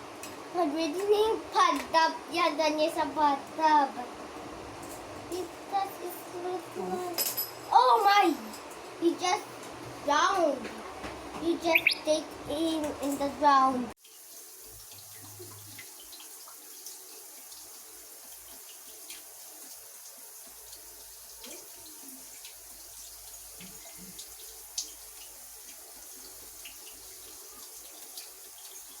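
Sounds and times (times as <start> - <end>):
shower water running: 0.0 - 29.0
water drips and splashes: 14.0 - 29.0.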